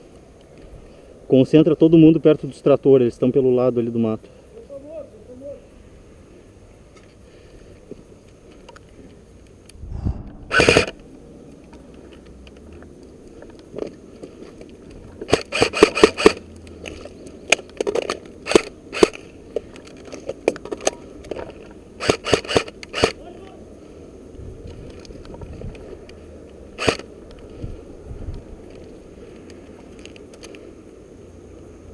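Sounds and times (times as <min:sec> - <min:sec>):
airsoft guns firing: 0:10.5 - 0:11.0.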